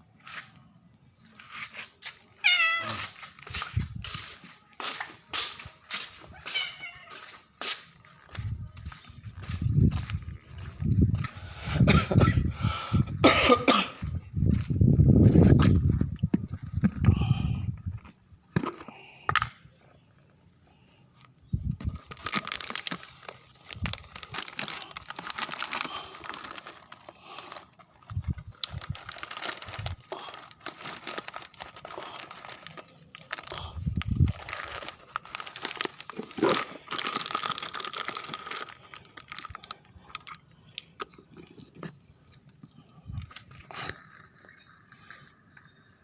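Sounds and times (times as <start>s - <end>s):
plastic packet crinkling and tearing: 21.8s - 41.2s.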